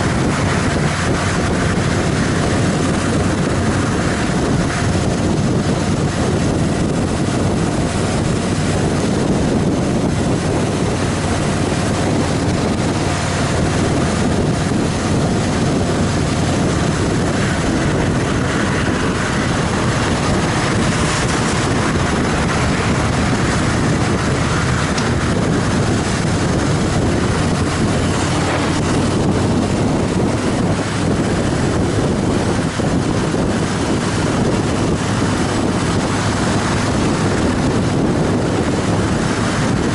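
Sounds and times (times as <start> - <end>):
motorcycle engine running: 0.0 - 39.9
wind rushing over microphone: 0.0 - 39.9.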